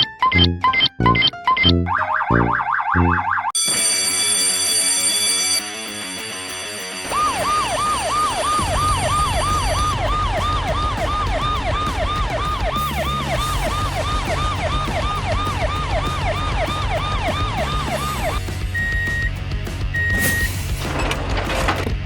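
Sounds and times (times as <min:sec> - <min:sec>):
emergency vehicle siren: 0:01.9 - 0:04.0, 0:07.0 - 0:19.0
short beep: 0:18.8 - 0:19.3, 0:20.0 - 0:20.6.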